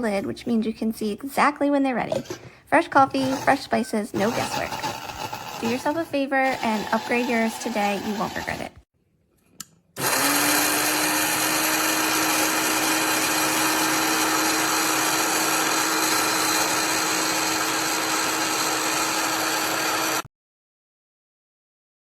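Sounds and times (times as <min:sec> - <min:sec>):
coffee grinder whirring: 0:03.2 - 0:03.6, 0:04.2 - 0:08.7, 0:10.0 - 0:20.3.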